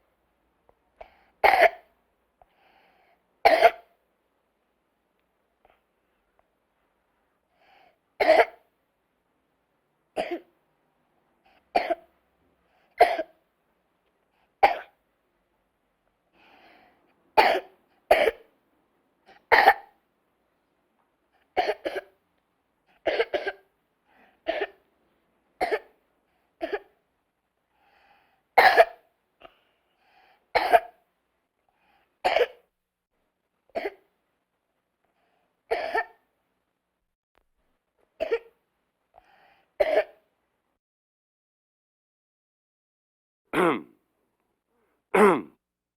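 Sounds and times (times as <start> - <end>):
person coughing: 3.4 - 3.9, 13.0 - 13.4, 19.3 - 19.9, 23.1 - 23.7, 28.6 - 29.0, 30.6 - 31.0, 43.6 - 44.0, 45.2 - 45.6.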